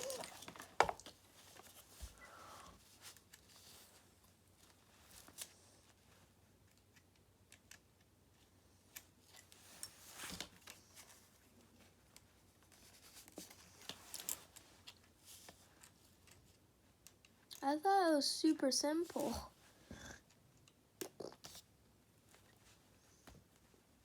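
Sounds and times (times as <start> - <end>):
small parts clicking and rustling: 2.8 - 17.6.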